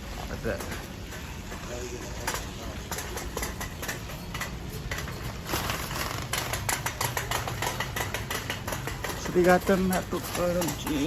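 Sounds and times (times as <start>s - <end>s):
shopping cart rattling: 0.0s - 11.0s.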